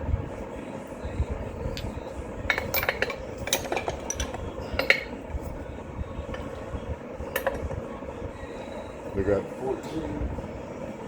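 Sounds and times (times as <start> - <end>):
metal tools clinking and rattling: 1.8 - 5.2.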